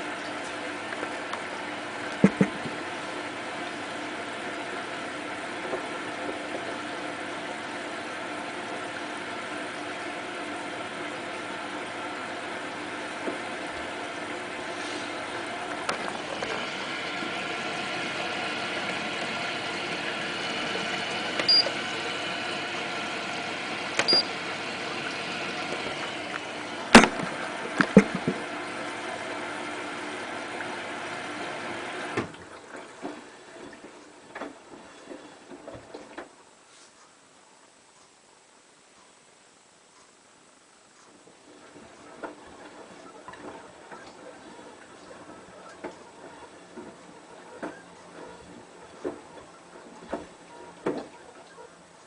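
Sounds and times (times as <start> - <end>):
washing machine running: 0.0 - 36.5, 41.2 - 52.0
sharp clicks: 24.0 - 24.3.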